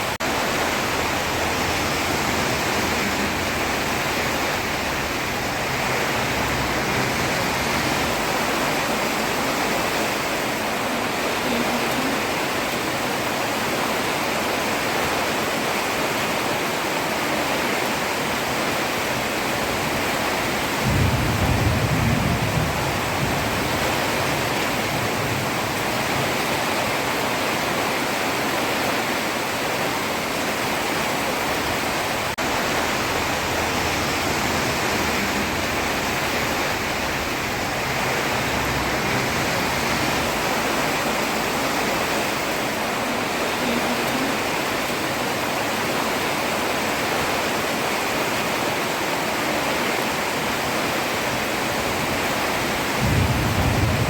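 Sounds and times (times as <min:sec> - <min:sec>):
heavy rain on a road: 0:00.0 - 0:54.0.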